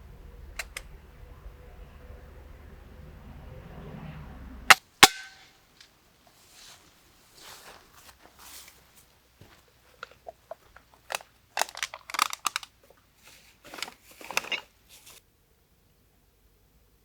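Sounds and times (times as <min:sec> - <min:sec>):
sharp clicks and rustles: 0:00.4 - 0:01.0, 0:09.9 - 0:15.2
crunching and crinkling: 0:05.7 - 0:15.2.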